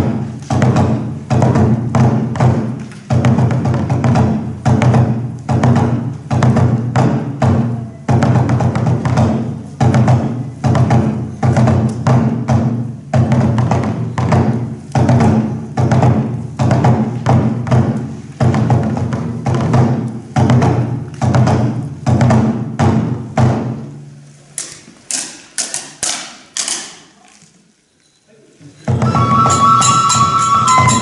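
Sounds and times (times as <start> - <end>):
taiko drum beating: 0.0 - 24.0, 28.9 - 31.0
sharp bright strikes: 29.0 - 31.0.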